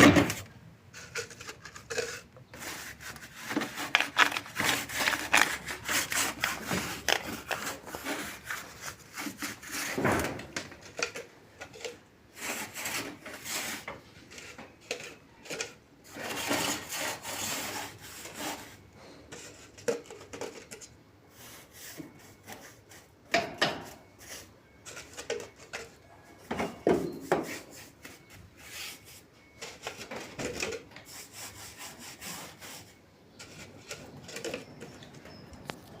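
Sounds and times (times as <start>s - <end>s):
scraping on wood: 0.0s - 20.9s.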